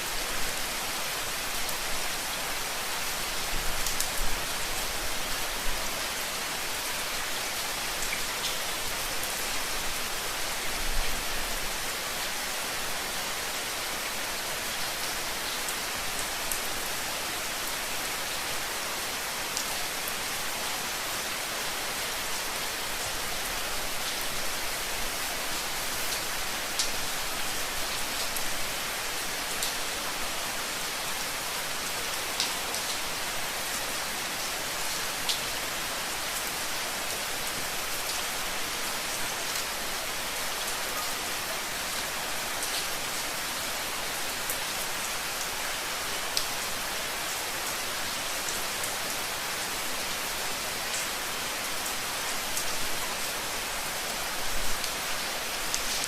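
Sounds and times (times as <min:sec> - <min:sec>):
rain falling: 0:00.0 - 0:56.0.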